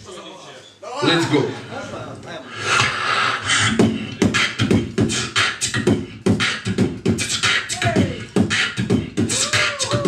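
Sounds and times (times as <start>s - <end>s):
beatboxing: 2.5s - 10.0s.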